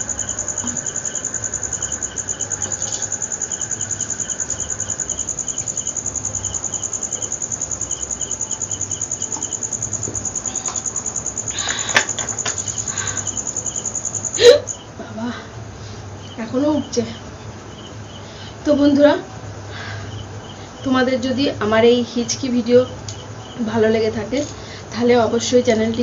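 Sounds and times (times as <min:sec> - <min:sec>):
lower insect chirps: 0:00.0 - 0:15.0
insects trilling: 0:00.0 - 0:26.0.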